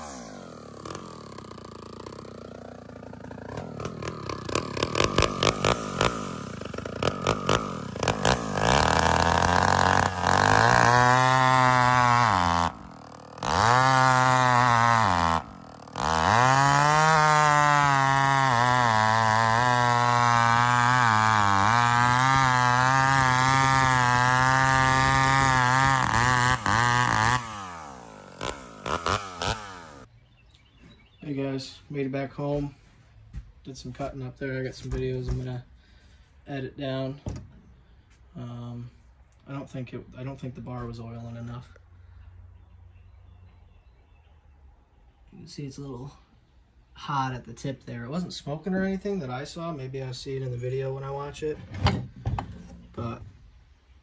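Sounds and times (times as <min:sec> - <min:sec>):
chainsaw revving: 0:00.0 - 0:30.1.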